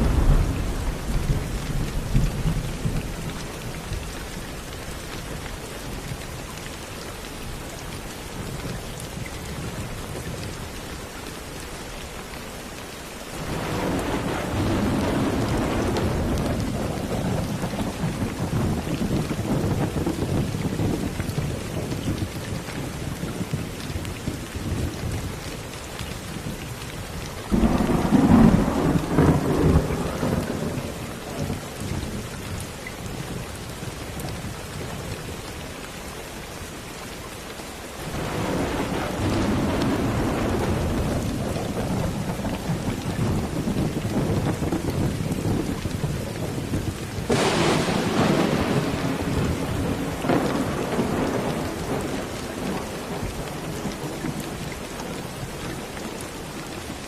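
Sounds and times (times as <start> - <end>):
rumbling thunder: 0.0 - 4.1, 13.4 - 25.4, 27.5 - 32.6, 38.0 - 55.5
steady rain: 0.0 - 57.0.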